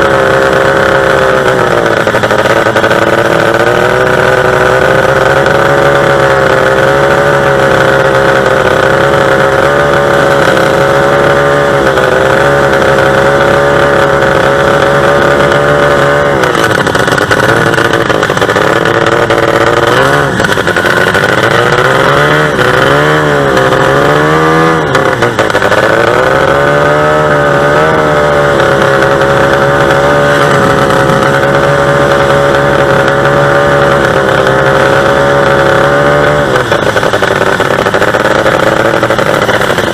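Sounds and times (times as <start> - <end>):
racing boat engine running: 0.0 - 39.9.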